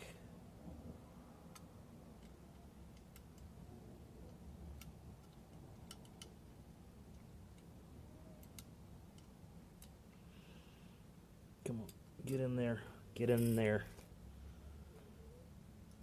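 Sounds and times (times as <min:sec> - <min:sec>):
small metal parts clicking: 0:04.3 - 0:06.4, 0:13.3 - 0:14.1.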